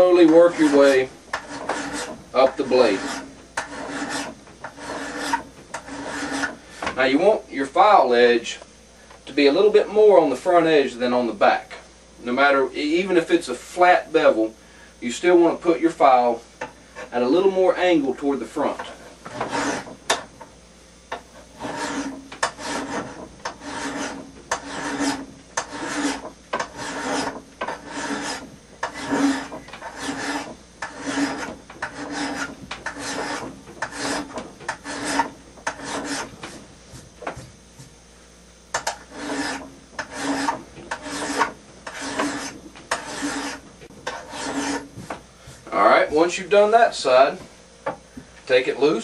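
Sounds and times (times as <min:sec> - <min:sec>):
hand file rasping on steel: 0:00.2 - 0:06.6, 0:19.3 - 0:20.2, 0:21.1 - 0:37.9, 0:38.7 - 0:45.7.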